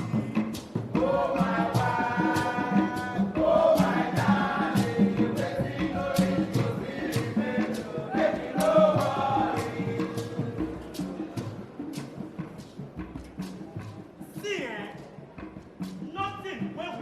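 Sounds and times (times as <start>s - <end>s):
group of voices singing: 0.0s - 12.2s
steady percussion strokes: 0.0s - 17.0s.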